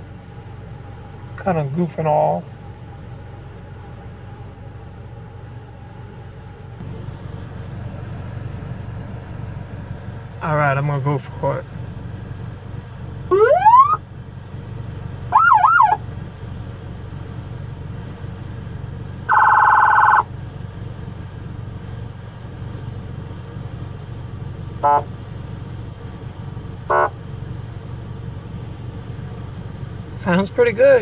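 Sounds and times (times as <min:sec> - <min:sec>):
steady low hum: 0:00.0 - 0:31.0
brief siren chirps: 0:13.3 - 0:14.0, 0:15.3 - 0:16.0, 0:19.3 - 0:20.3
electronic police siren: 0:13.3 - 0:14.0, 0:15.3 - 0:16.0, 0:19.3 - 0:20.3
buzzy horn tone: 0:24.8 - 0:25.1, 0:26.9 - 0:27.1.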